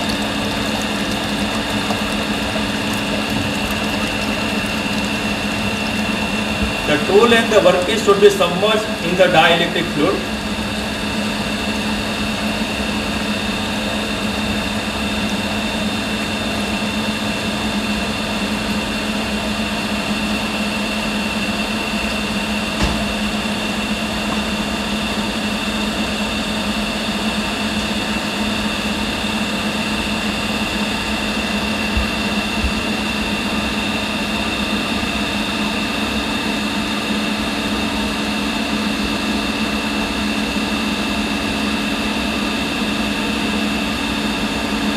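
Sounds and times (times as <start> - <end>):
pump humming with high whine: 0.0 - 44.9
brief knock: 22.8 - 23.1.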